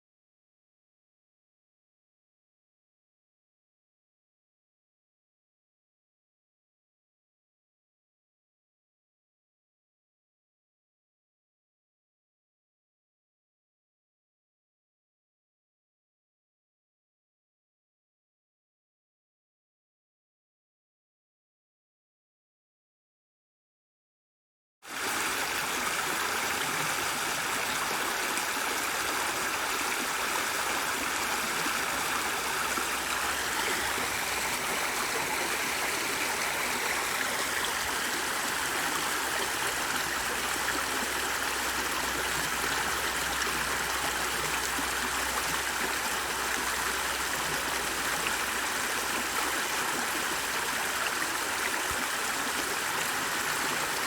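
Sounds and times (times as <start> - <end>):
stream flowing: 24.9 - 54.0.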